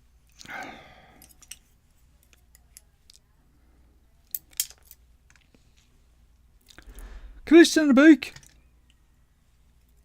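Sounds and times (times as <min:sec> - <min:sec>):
small metallic clicks of lock parts: 0:01.2 - 0:03.2, 0:04.2 - 0:05.6
short breathy sound: 0:06.7 - 0:07.5.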